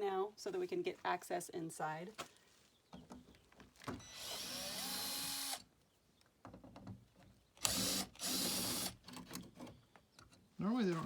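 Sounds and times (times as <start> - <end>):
cordless drill spinning: 4.0 - 5.6, 7.6 - 9.0.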